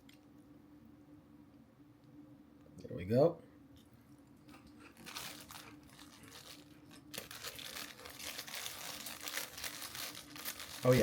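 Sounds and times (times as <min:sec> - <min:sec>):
crackers crunching: 0:04.2 - 0:11.0
plastic packaging crinkling: 0:04.8 - 0:11.0.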